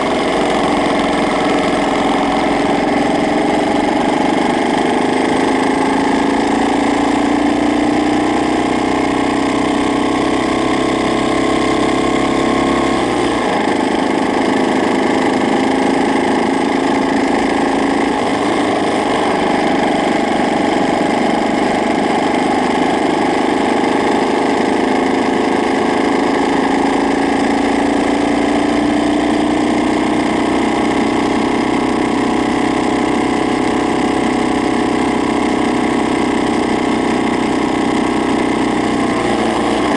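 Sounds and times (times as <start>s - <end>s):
motorbike engine idling roughly: 0.0s - 39.9s.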